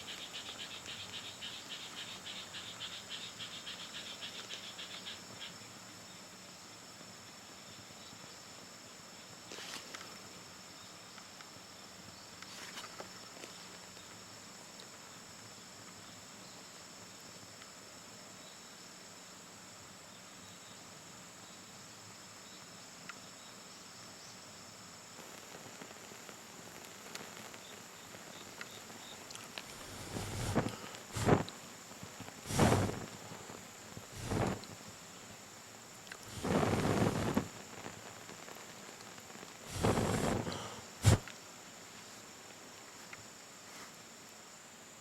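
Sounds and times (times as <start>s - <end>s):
insects trilling: 0.0s - 45.0s
faint snaps and crackles: 25.2s - 34.9s, 36.0s - 41.4s.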